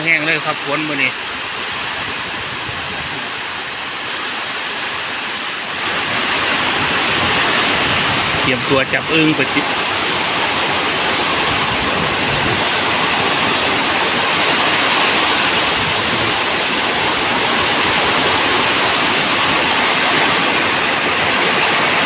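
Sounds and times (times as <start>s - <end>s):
heavy rain pouring: 0.0s - 22.0s.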